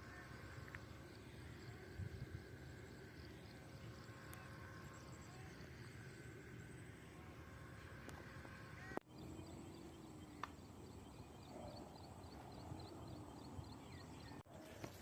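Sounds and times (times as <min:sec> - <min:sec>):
faint outdoor background noise: 0:00.0 - 0:15.0.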